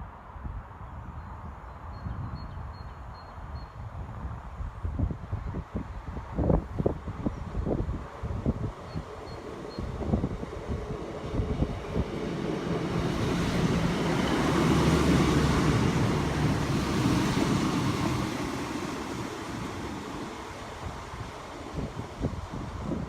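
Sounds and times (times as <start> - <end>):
train passing: 7.7 - 23.0.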